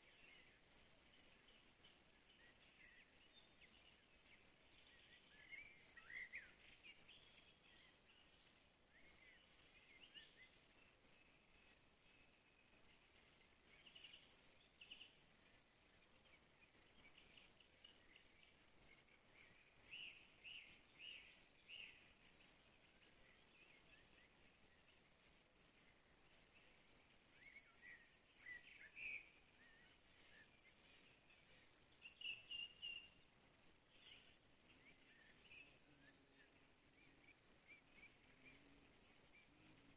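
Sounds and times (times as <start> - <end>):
cricket chirping: 0.0 - 39.9
short bird chirps: 31.6 - 33.3.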